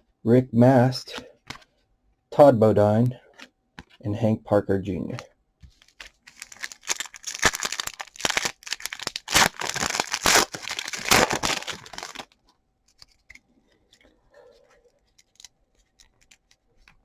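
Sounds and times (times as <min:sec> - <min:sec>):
foil wrapper tearing and crinkling: 0:05.9 - 0:12.4.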